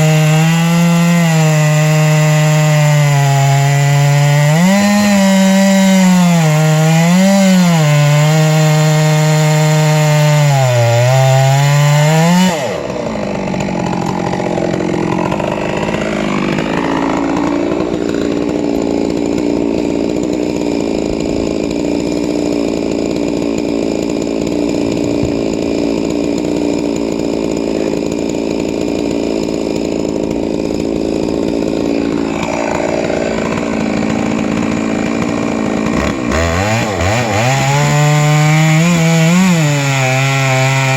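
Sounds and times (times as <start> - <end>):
chainsaw running at high revs: 0.0 - 40.9.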